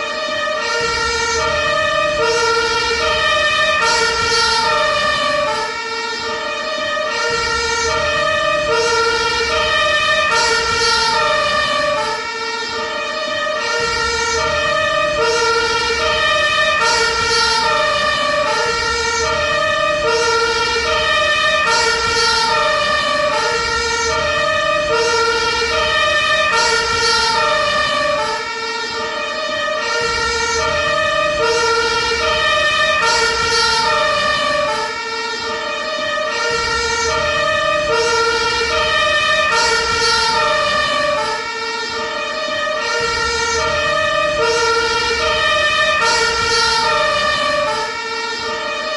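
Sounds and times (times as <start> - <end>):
ambulance two-tone siren: 0.0 - 48.9.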